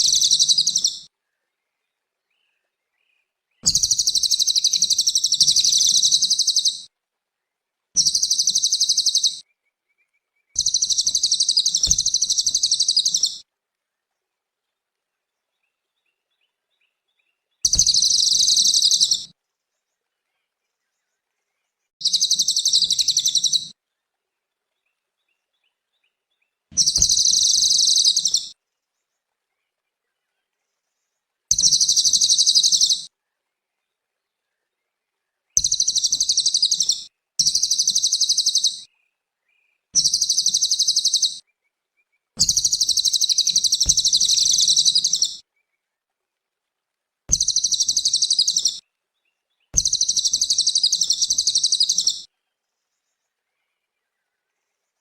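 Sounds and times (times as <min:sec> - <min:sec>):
songbird twittering: 0:00.0 - 0:01.1, 0:02.3 - 0:06.9, 0:08.0 - 0:13.4, 0:15.7 - 0:19.3, 0:22.0 - 0:23.7, 0:26.7 - 0:28.6, 0:31.5 - 0:33.1, 0:35.5 - 0:41.5, 0:42.4 - 0:45.4, 0:47.3 - 0:52.3.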